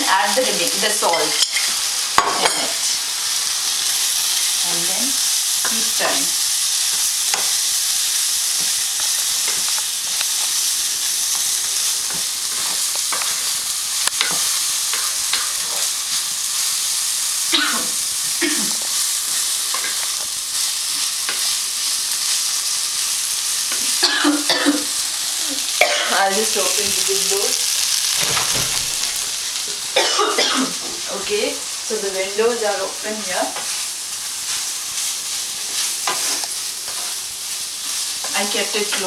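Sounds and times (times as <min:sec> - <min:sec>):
okra sizzling in oil: 0:00.0 - 0:39.0
spatula scraping a pan: 0:11.3 - 0:15.9, 0:34.4 - 0:37.2.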